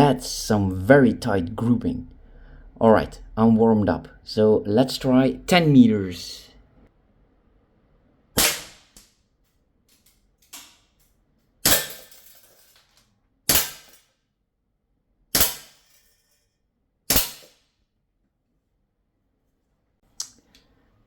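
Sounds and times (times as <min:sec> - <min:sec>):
air pistol shots: 0:08.4 - 0:09.0, 0:13.5 - 0:14.0, 0:15.4 - 0:15.8, 0:17.1 - 0:17.6.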